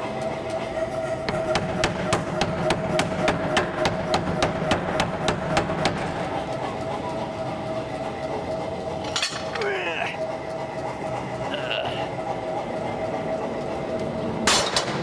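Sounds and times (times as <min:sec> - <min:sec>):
steady hum: 0:00.0 - 0:15.0
power hammer striking steel: 0:01.2 - 0:06.4, 0:14.4 - 0:15.0.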